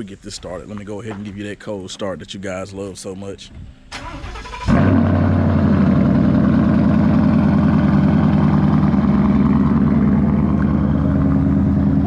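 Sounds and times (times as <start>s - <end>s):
car engine idling: 4.0s - 12.0s.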